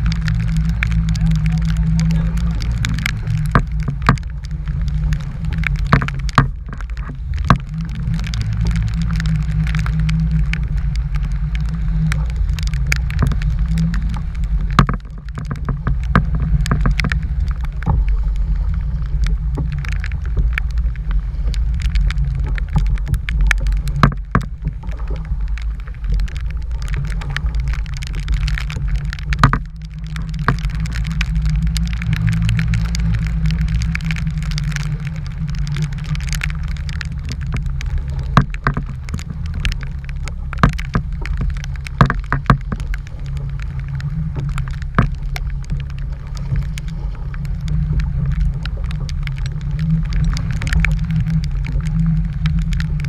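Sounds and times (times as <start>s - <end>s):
sharp ticks and taps: 0.0s - 18.2s, 19.0s - 34.9s, 35.5s - 43.5s, 44.3s - 46.9s
wind rumbling on microphone: 0.0s - 53.0s.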